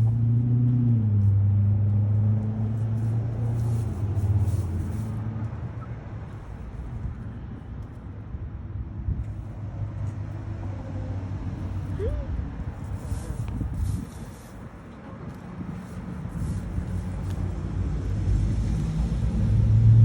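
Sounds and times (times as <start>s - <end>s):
vehicle engine humming: 0.0s - 20.0s.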